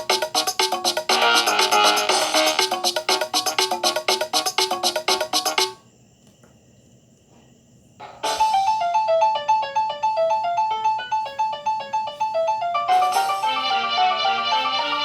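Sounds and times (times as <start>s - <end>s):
electronic ringtone melody: 0.0s - 5.8s, 10.7s - 15.0s.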